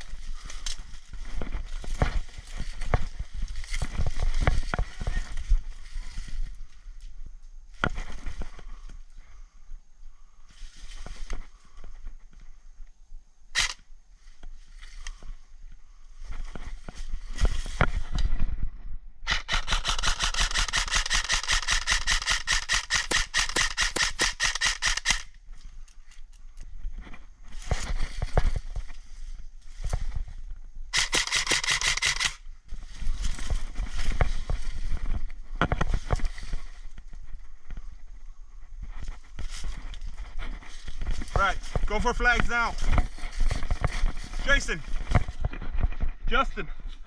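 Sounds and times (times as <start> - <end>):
knocks and rustle: 0.4 - 6.4, 42.8 - 46.3
airsoft gun automatic fire: 13.6 - 13.8, 19.3 - 25.3, 30.9 - 32.4.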